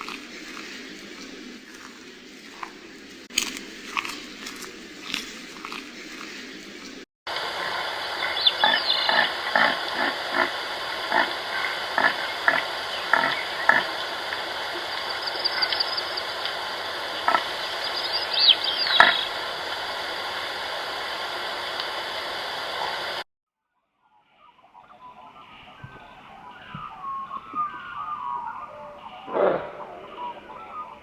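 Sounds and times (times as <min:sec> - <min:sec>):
steady hiss: 0:00.0 - 0:23.2.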